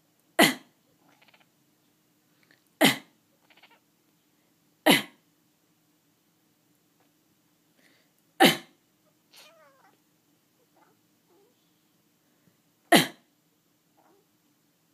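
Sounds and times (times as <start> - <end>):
cat meowing: 1.0 - 1.5, 3.4 - 3.8, 9.3 - 10.0, 14.0 - 14.3
person coughing: 2.8 - 3.1, 8.4 - 8.7, 12.9 - 13.3.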